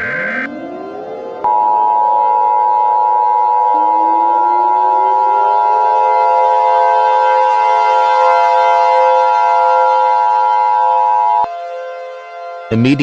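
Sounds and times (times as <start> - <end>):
steady high alert tone: 0.0 - 8.8, 12.7 - 13.0
siren winding up: 0.0 - 12.4.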